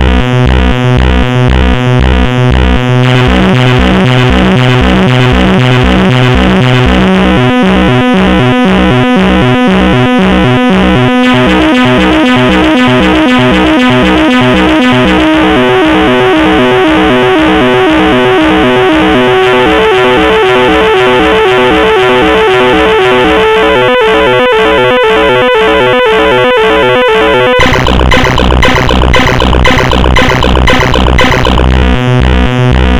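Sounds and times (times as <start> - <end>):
synthesizer music: 3.0 - 7.6, 11.1 - 32.7.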